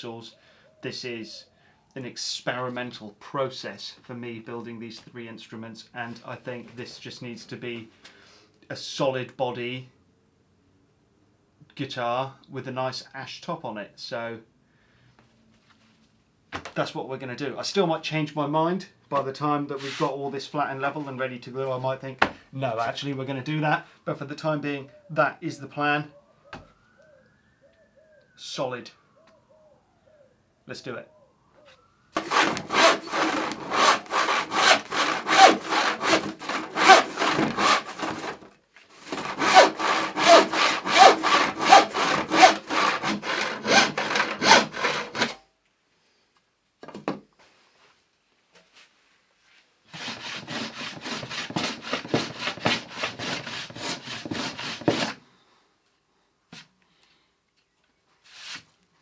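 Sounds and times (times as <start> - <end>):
hand tool rasping on wood: 32.2 - 45.4, 50.0 - 55.2.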